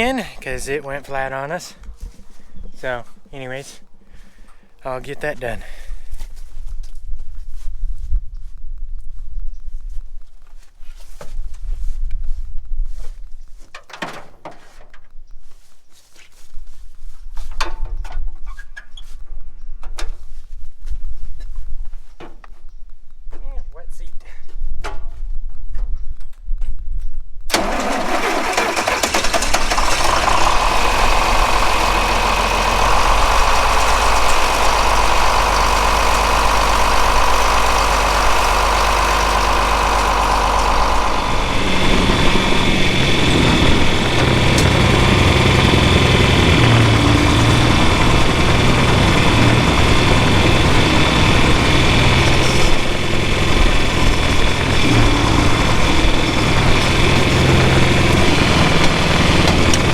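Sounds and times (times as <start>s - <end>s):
farm vehicle engine running: 0.0s - 1.8s, 27.5s - 59.9s.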